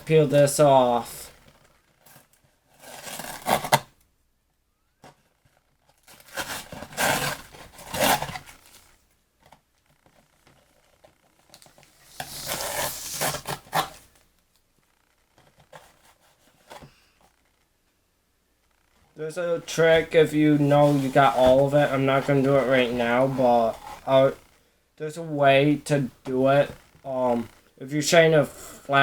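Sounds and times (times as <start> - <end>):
plastic film peeling: 11.4 - 14.2.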